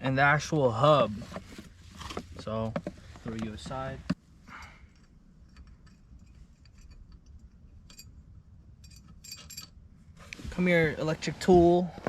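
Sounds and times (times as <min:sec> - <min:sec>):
small metal parts clinking: 0:05.0 - 0:08.2, 0:08.8 - 0:09.8.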